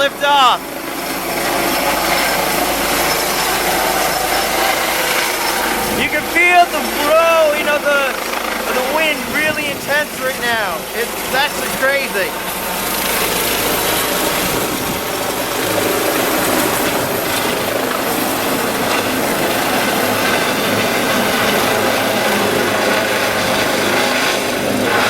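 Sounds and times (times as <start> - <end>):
helicopter rotor and turbine: 0.0 - 25.0
rotor downwash wind buffeting: 0.0 - 25.0.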